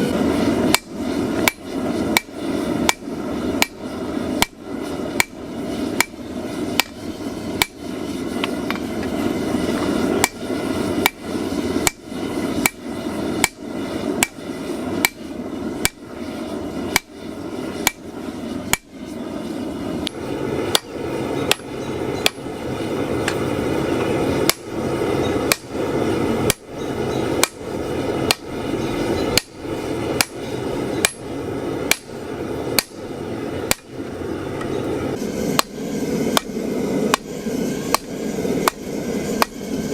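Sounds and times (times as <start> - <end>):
continuous rushing noise: 0.0 - 39.9
hammer striking steel on anvil: 0.7 - 3.8, 4.4 - 4.6, 5.2 - 5.4, 6.0 - 6.2, 6.8 - 7.0, 7.6 - 7.8, 10.2 - 10.4, 11.8 - 12.0, 12.6 - 12.8, 13.4 - 13.6, 14.2 - 14.4, 15.0 - 16.0, 16.9 - 17.1, 17.8 - 18.0, 25.5 - 25.7, 28.3 - 28.5, 29.2 - 29.6, 30.2 - 31.3, 31.9 - 32.1, 32.8 - 33.0, 33.7 - 33.9, 35.6 - 37.3, 37.9 - 38.8.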